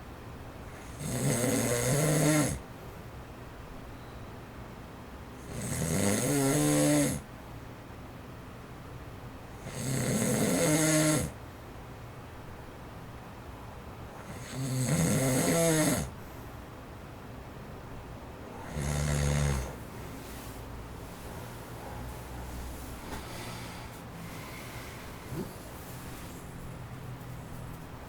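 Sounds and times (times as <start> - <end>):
man snoring: 0.8 - 2.6, 5.4 - 7.2, 9.6 - 11.4, 14.2 - 16.1, 18.5 - 19.8
electric fan wind noise: 4.6 - 28.0.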